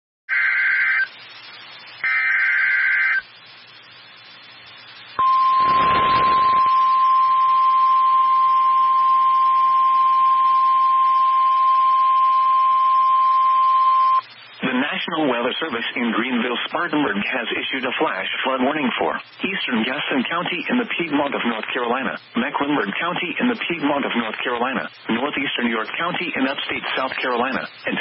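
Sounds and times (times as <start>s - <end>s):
faint radio hiss: 0.3s - 28.0s
static rush: 0.8s - 7.6s, 14.0s - 28.0s
shrill digital header bursts: 5.2s - 8.2s
steady warning alarm tone: 5.2s - 14.2s.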